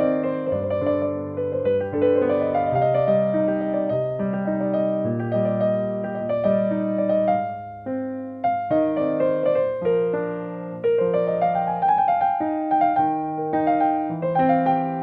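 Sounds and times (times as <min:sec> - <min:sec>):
soft piano music: 0:00.0 - 0:15.0.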